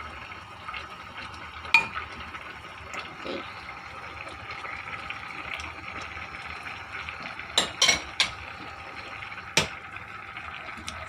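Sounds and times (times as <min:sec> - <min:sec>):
metal utensils clinking on pot: 0:07.6 - 0:08.4.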